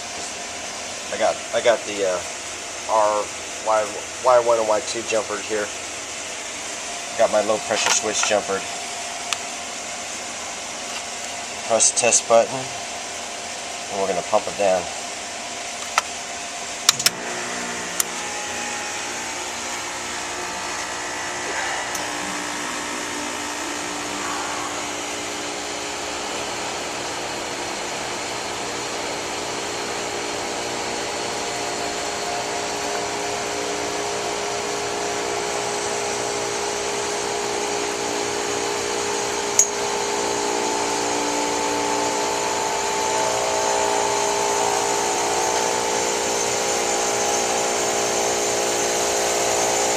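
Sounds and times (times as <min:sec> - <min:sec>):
air conditioner unit humming: 0:00.0 - 0:49.9.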